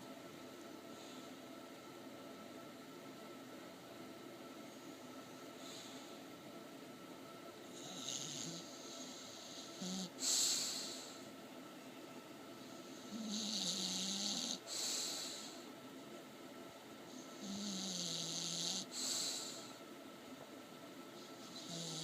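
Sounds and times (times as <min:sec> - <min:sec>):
dog snoring: 0:07.7 - 0:11.0, 0:12.8 - 0:15.6, 0:17.1 - 0:19.6, 0:21.4 - 0:22.0.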